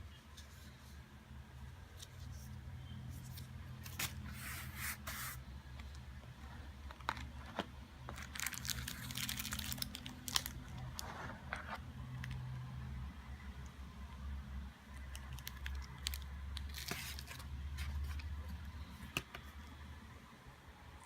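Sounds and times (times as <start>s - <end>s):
packaging rustling and crinkling: 7.0s - 12.4s, 15.1s - 18.2s.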